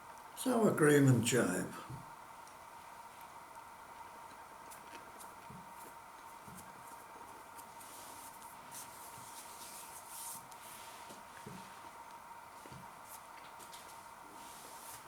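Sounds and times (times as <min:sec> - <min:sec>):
electrical hum: 0:00.0 - 0:15.0
faint chewing of crispy food: 0:04.2 - 0:07.8.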